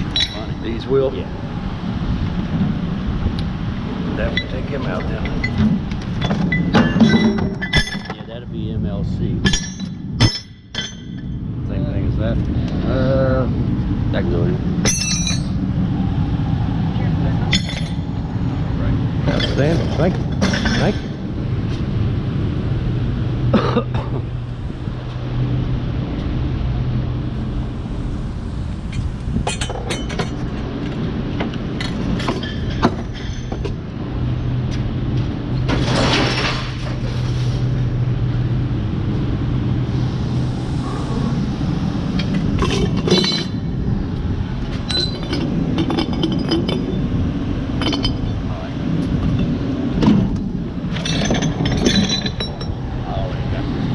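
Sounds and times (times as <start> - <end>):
low engine hum: 0.0 - 53.9
scrap metal clanking: 4.4 - 8.3, 35.6 - 37.8, 50.1 - 52.8
rattling metal crash: 4.5 - 8.3, 35.6 - 37.8, 50.9 - 52.8.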